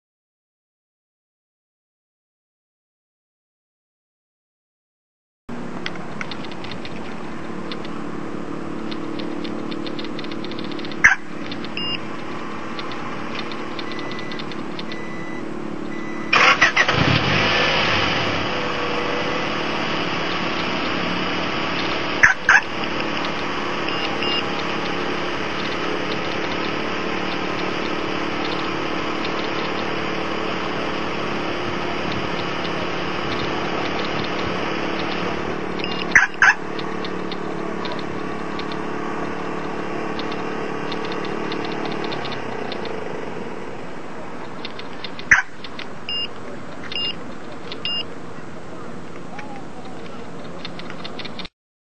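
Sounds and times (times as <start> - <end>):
car engine cranking and idling: 5.5 - 51.5
clicks with short chirps: 12.7 - 16.4, 21.7 - 30.4, 32.1 - 43.0, 44.6 - 48.1.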